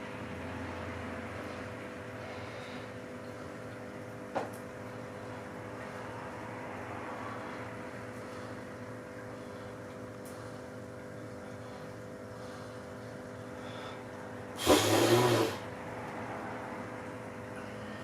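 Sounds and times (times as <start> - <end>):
steady hum with fixed tones: 0.0 - 18.0
snort through the nose: 14.6 - 15.7.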